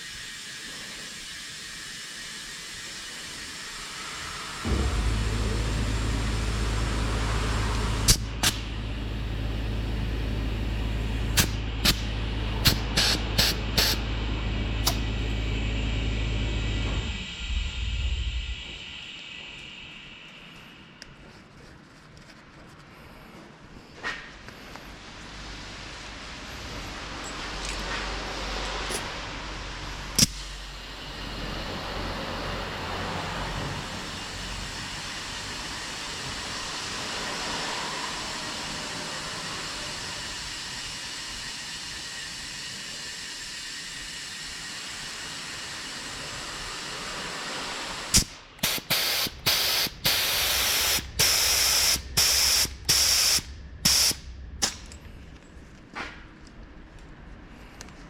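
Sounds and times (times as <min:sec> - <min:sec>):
short hissing spray bursts: 0:11.4 - 0:14.0, 0:47.2 - 0:54.2.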